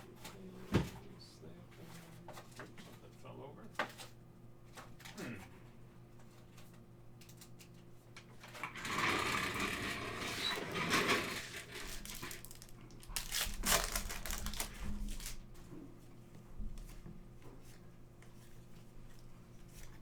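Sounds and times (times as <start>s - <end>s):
cards clicking and rustling: 11.4s - 15.4s
foil pack crinkling and tearing: 11.4s - 15.4s.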